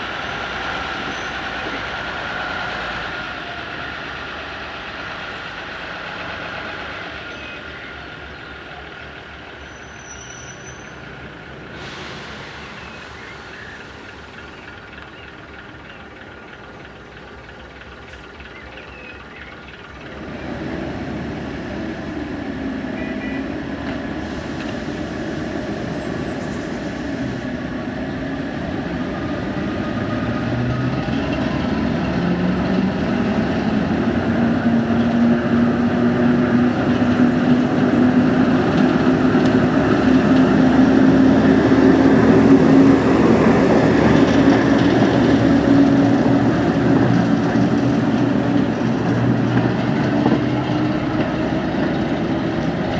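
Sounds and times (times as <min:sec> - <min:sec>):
diesel train engine: 0:00.0 - 0:52.9.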